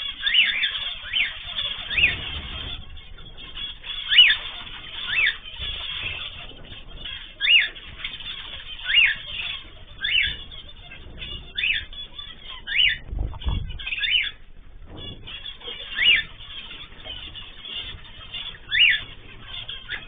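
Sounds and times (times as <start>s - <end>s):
birds calling with falling pitch: 0.0s - 20.0s
low rumble: 9.4s - 19.4s.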